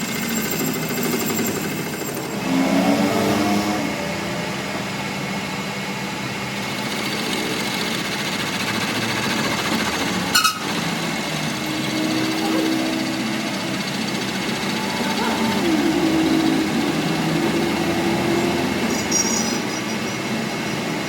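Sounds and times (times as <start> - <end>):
workshop machine running: 0.0 - 21.0.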